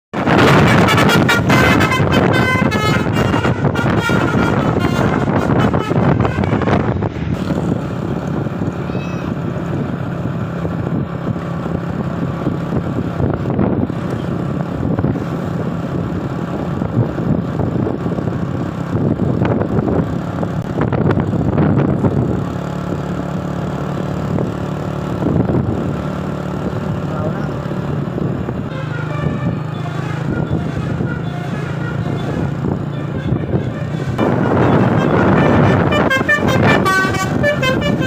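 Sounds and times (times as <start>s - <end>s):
bus engine running: 0.1s - 38.0s
road and traffic noise: 0.1s - 38.0s
musical bus horn: 0.2s - 7.4s, 28.5s - 38.0s.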